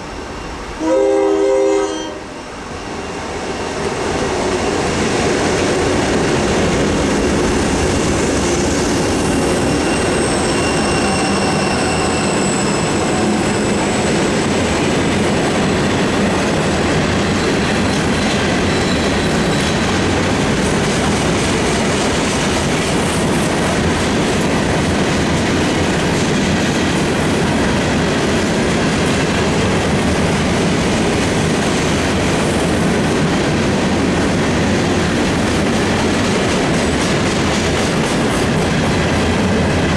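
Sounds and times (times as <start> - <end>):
train wheels rumbling and clattering: 2.8 - 39.9
high wheel squeals: 9.0 - 14.7.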